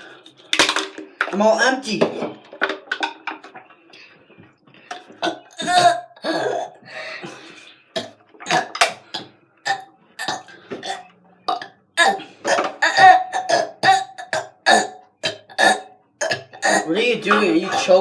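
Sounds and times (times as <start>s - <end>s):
person burping: 4.9s - 6.9s, 8.0s - 18.0s.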